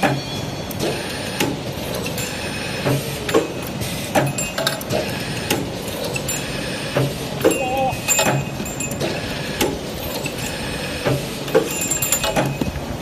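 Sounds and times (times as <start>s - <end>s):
machine running steadily: 0.0s - 13.0s
sharp knocks of tubes: 7.0s - 9.8s.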